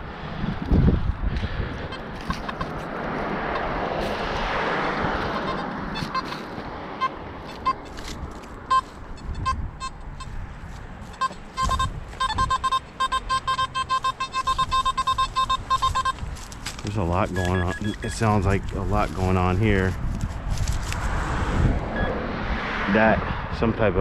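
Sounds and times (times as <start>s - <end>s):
metal detector beeping: 1.9s - 3.8s, 5.2s - 10.4s, 11.0s - 19.4s, 22.0s - 22.2s
scattered clicks: 11.2s - 18.8s.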